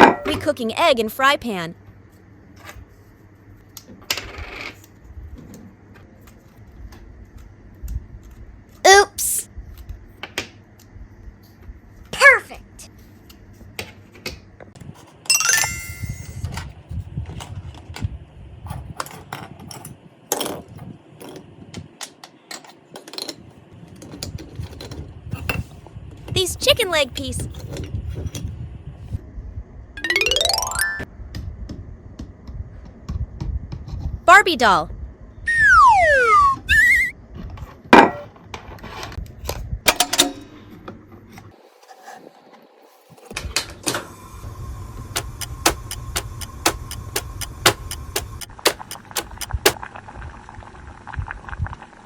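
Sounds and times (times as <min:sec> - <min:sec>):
falling whistle sound effect: 0:35.5 - 0:37.1
toy pieces clicking and clacking: 0:45.2 - 0:49.8
sharp knock: 0:45.6 - 0:49.8.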